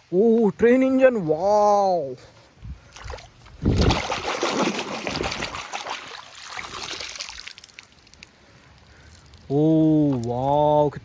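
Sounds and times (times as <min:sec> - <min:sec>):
water trickling and splashing: 0:02.4 - 0:10.9.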